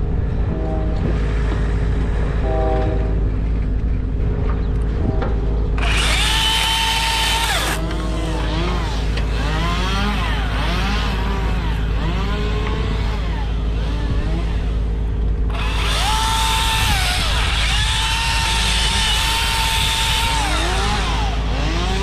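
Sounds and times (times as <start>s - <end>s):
low engine drone: 0.0s - 22.0s
chainsaw revving: 5.8s - 22.0s.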